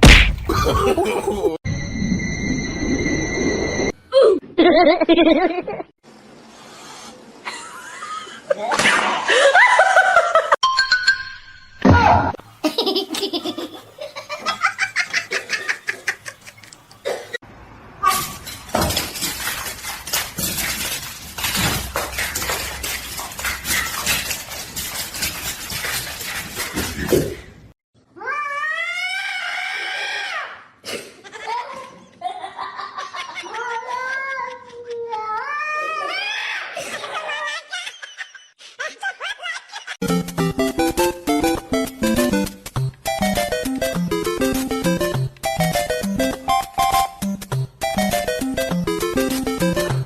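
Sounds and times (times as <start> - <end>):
people laughing: 0.5 - 1.6, 36.8 - 40.0.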